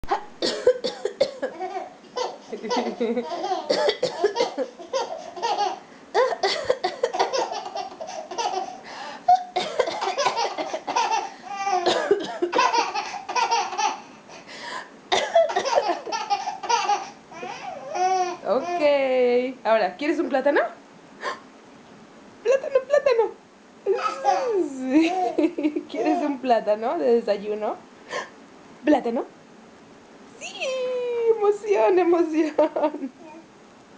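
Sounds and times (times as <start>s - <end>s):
woman coughing: 0.4s - 1.6s, 3.7s - 4.8s, 6.2s - 7.4s, 9.3s - 11.1s, 11.8s - 12.9s, 15.1s - 16.1s
baby laughing: 1.4s - 14.1s, 15.4s - 18.8s, 23.9s - 26.4s.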